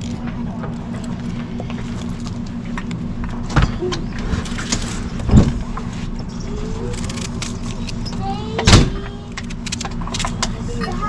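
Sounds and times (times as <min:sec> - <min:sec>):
loud wind thumps: 0:03.4 - 0:05.8.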